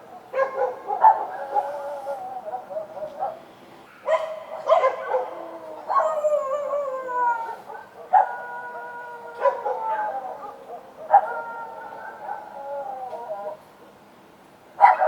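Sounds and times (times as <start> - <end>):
dogs barking: 0.1 - 3.4, 4.0 - 6.2, 7.7 - 12.6, 14.8 - 15.0
dogs howling: 0.4 - 3.4, 4.1 - 13.6.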